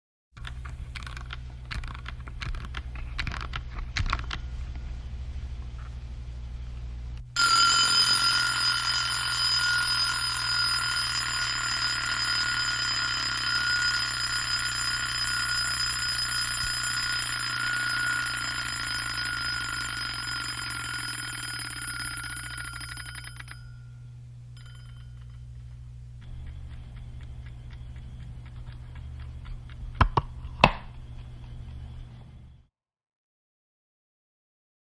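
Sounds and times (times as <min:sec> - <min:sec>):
timer bell ringing: 0:07.4 - 0:25.7
mechanical timer clicking: 0:25.1 - 0:30.1.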